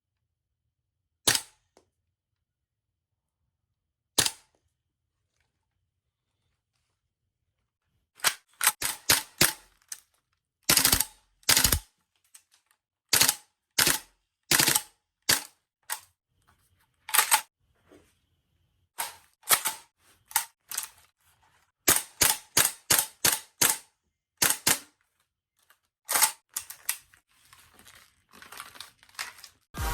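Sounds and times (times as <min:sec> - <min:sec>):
airsoft rifle firing: 0:10.7 - 0:11.8.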